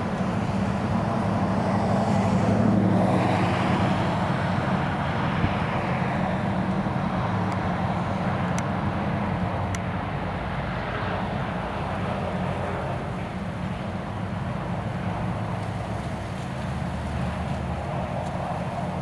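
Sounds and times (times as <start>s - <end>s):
strong wind on microphone: 0.0s - 10.3s.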